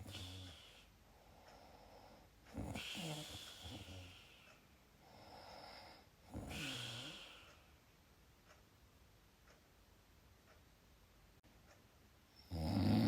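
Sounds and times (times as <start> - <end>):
soft breath: 0.0 - 7.8
person snoring: 2.6 - 4.4, 6.3 - 7.5, 12.5 - 13.0.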